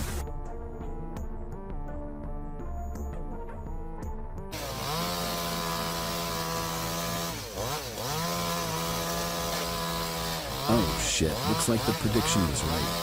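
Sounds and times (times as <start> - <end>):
background music: 0.0 - 13.0
chainsaw engine running at high speed: 4.5 - 13.0.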